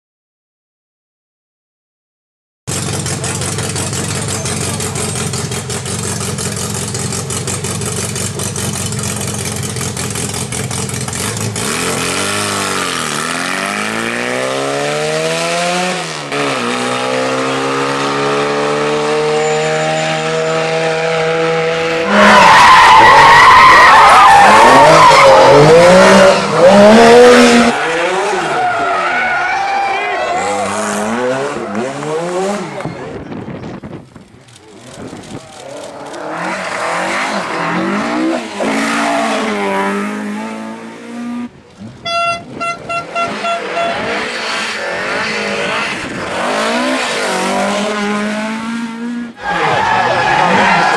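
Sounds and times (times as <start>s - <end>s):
rally car engine revving: 2.7s - 29.5s, 30.3s - 33.4s, 34.5s - 50.9s.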